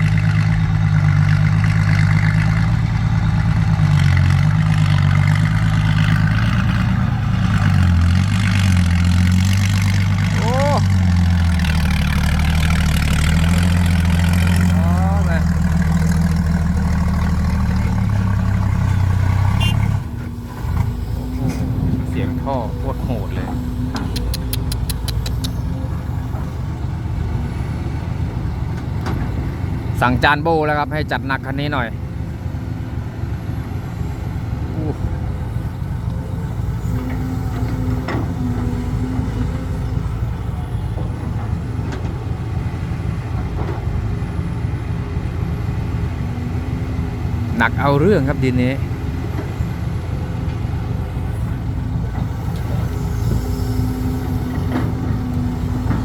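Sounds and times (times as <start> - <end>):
heavy diesel engine exhaust: 0.0 - 56.0.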